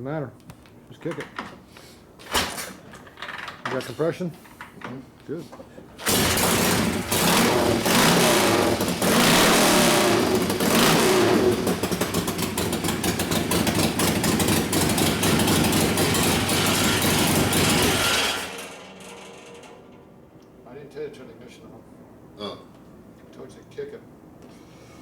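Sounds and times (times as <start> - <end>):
motorcycle engine running: 6.0 - 19.9.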